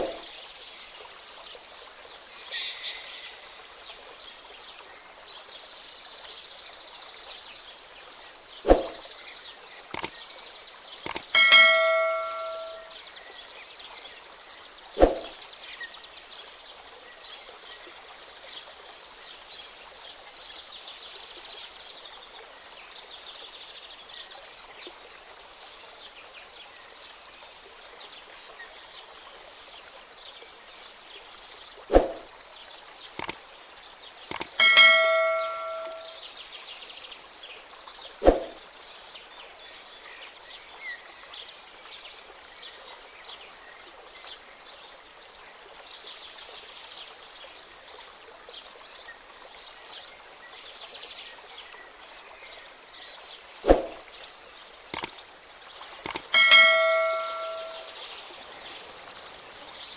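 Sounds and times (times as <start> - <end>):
bell-like ding: 11.4 - 12.9, 34.6 - 36.2, 56.4 - 58.0.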